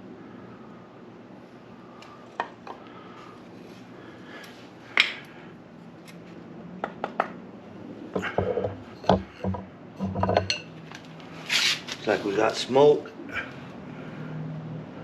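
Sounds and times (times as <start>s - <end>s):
bow drill wooden knocks and rubbing: 8.2s - 10.6s.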